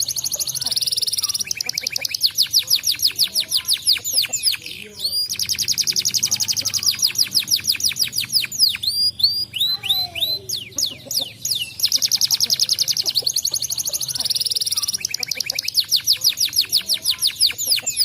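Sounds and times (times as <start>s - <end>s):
canary singing: 0.0s - 18.0s.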